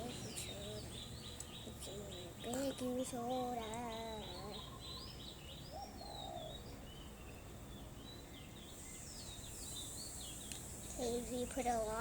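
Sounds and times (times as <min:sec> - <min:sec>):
small birds chirping: 0:00.0 - 0:12.0
soft hiss: 0:08.6 - 0:12.0.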